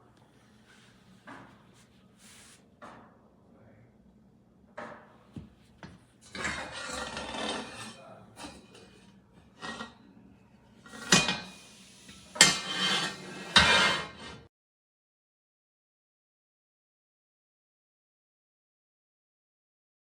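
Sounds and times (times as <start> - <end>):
scraping and rubbing: 6.3 - 9.0, 9.6 - 10.0, 10.9 - 14.5.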